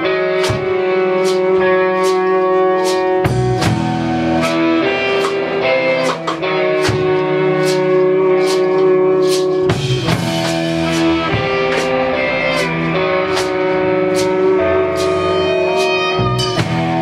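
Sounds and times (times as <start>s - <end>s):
ringing guitar chords: 0.0s - 17.0s
slow even beat: 0.0s - 17.0s.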